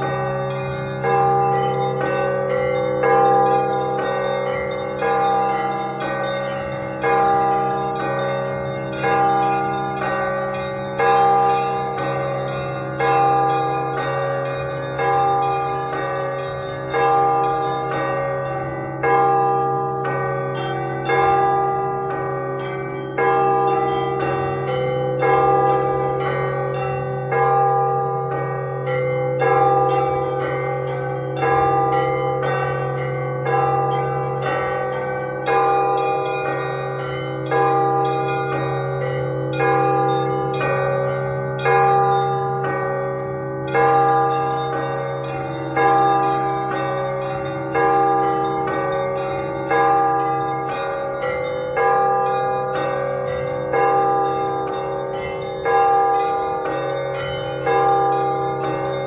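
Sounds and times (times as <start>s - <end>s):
large church bell: 0.0s - 59.0s
small bells struck rapidly: 43.7s - 59.0s.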